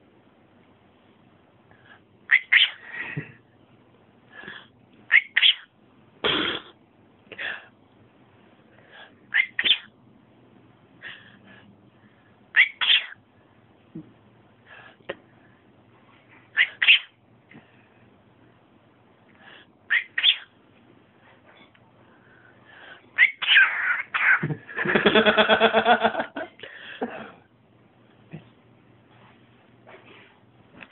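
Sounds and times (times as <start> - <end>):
cockatiel sneezing: 6.2 - 6.8, 12.6 - 13.2, 16.6 - 17.1.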